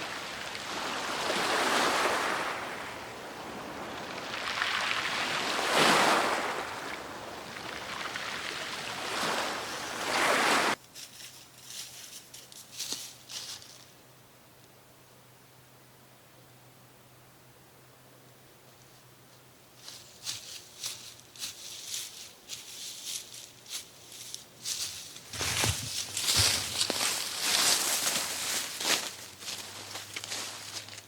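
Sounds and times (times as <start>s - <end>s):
sea surf washing ashore: 0.0s - 10.8s
faint clicks and rustles: 10.8s - 13.9s, 19.8s - 31.0s.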